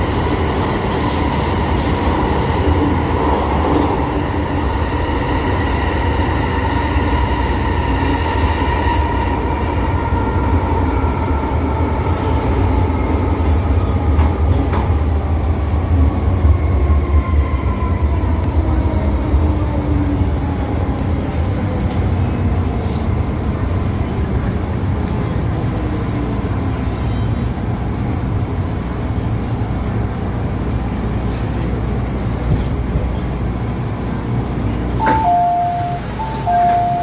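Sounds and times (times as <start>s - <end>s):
train car rumble: 0.0s - 37.0s
two-note electronic chime: 35.0s - 37.0s.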